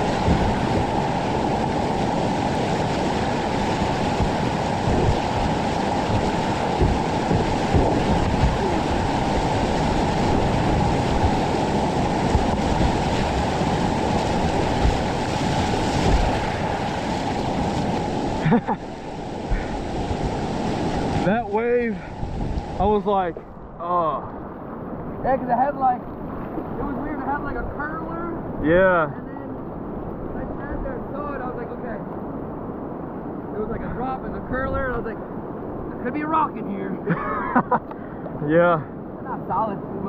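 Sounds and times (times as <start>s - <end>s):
water splashing against microphone: 0.0s - 18.4s
whitewater rapids rushing: 0.0s - 22.1s.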